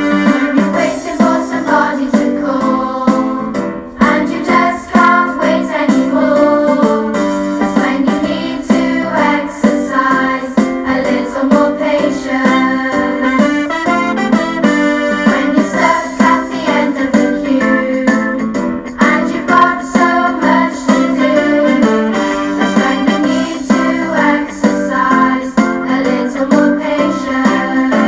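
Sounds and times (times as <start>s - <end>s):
bouncy piano tune: 0.0s - 28.0s
steady beat: 0.0s - 28.0s
person singing: 15.2s - 28.0s.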